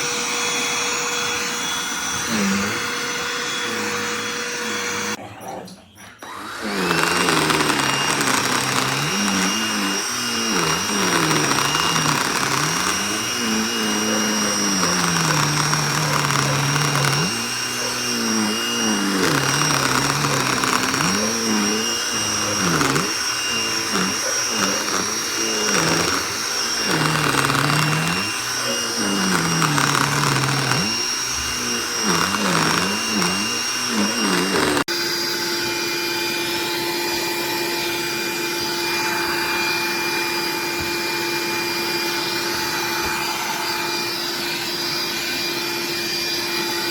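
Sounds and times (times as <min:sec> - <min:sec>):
vacuum cleaner motor running: 0:00.0 - 0:05.2, 0:06.2 - 0:46.9.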